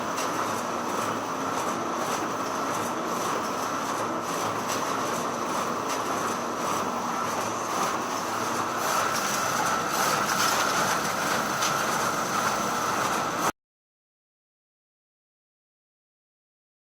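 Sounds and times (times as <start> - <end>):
photocopier whirring: 0.0 - 13.5.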